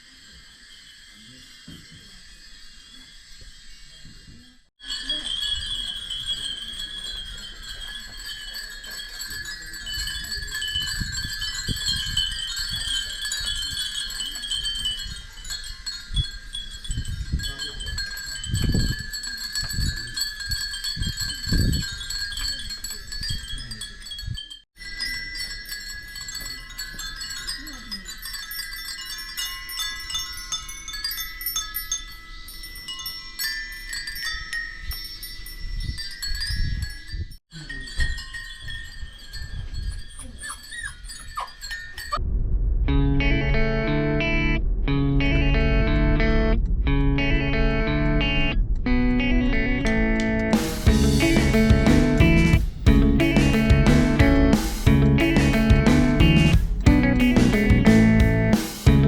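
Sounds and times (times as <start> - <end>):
wind chimes tinkling: 0.0 - 42.2, 50.0 - 59.0
loud low rumbles: 42.2 - 48.9, 49.8 - 59.0.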